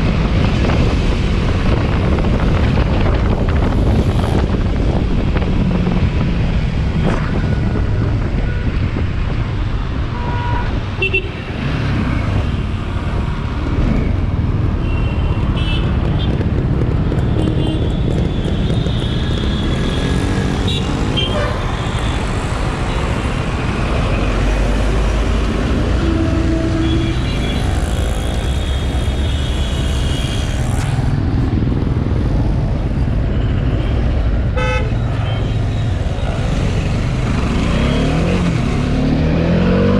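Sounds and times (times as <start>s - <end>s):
traffic noise: 0.0s - 39.9s
wind: 0.0s - 39.9s.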